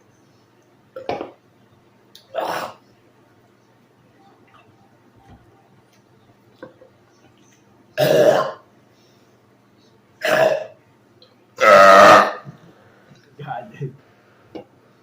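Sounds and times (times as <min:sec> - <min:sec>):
man belching: 0:08.0 - 0:08.6, 0:10.2 - 0:10.7, 0:11.6 - 0:12.5.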